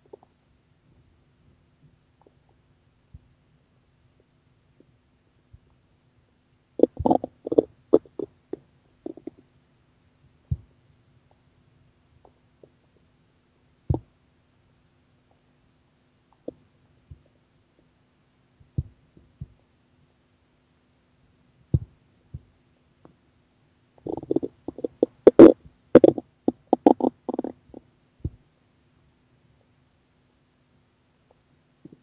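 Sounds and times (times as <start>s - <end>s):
stomach growling: 6.8s - 9.4s, 24.0s - 27.8s.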